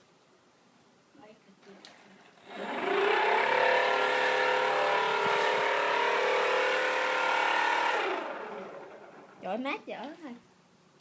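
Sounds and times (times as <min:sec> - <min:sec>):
small electric motor whining: 0:02.3 - 0:09.3.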